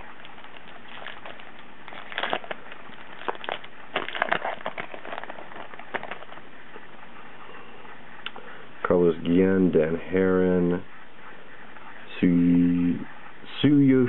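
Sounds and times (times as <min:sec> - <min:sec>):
wrapper crinkling and tearing: 0:00.1 - 0:06.4.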